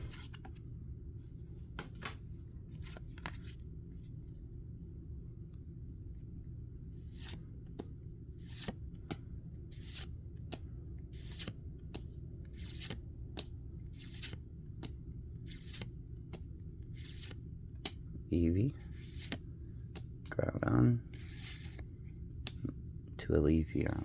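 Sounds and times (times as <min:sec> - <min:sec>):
steady low hum: 0:00.0 - 0:24.0
cards sliding with papery swish: 0:07.0 - 0:18.0, 0:18.8 - 0:20.1, 0:21.1 - 0:22.6
light tap of cards: 0:17.8 - 0:18.0.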